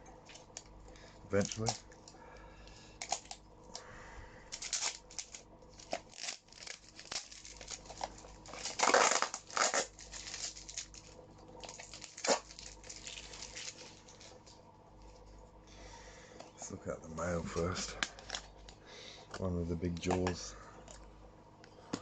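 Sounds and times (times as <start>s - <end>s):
packaging crinkling and rustling: 1.3s - 2.1s, 3.0s - 3.4s, 4.5s - 15.3s, 17.5s - 21.0s
packaging tearing: 4.5s - 14.5s
sharp crackle: 4.5s - 14.5s.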